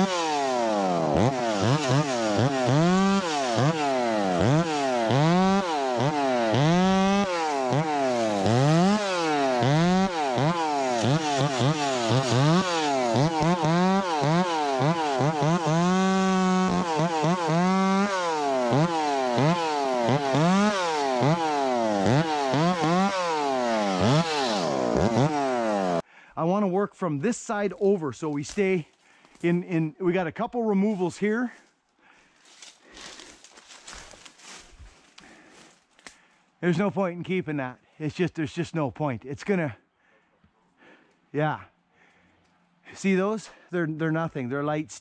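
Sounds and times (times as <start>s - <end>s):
chainsaw cutting wood: 0.0s - 26.0s, 32.5s - 36.2s.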